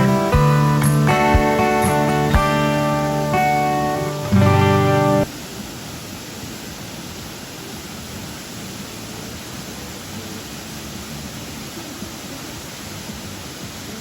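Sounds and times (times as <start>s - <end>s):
waterfall rushing: 0.0s - 14.0s.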